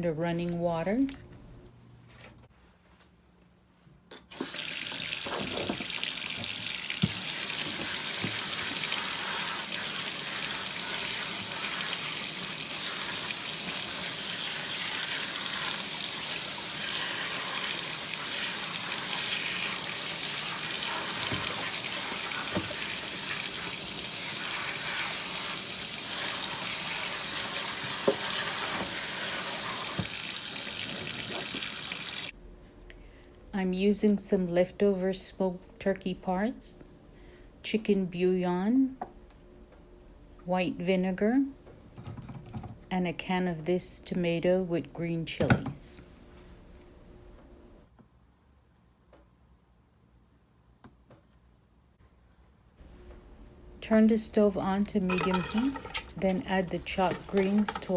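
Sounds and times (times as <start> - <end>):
faucet running into sink: 4.3 - 32.3, 55.1 - 57.9
colander knocks: 55.1 - 57.9.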